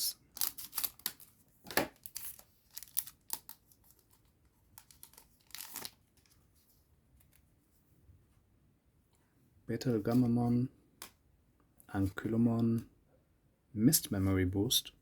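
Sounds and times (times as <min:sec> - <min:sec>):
foil wrapper tearing and crinkling: 0:00.3 - 0:01.3, 0:02.0 - 0:03.6, 0:04.8 - 0:06.0.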